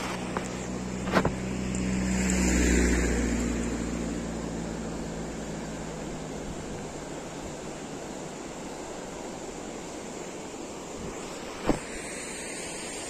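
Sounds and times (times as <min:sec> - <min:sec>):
car driving past: 0:00.0 - 0:07.8.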